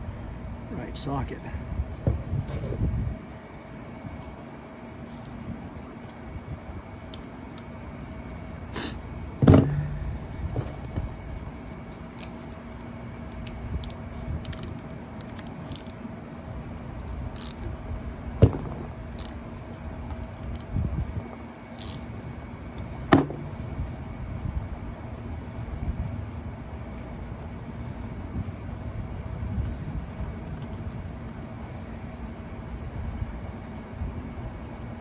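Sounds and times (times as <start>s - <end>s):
sharp metal knocks: 9.4s - 11.2s, 18.4s - 19.3s, 23.1s - 23.8s.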